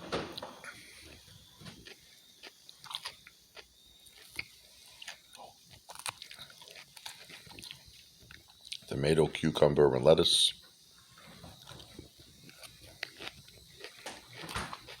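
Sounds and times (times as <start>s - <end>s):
chewing crunches: 0.6s - 9.0s, 11.4s - 15.0s.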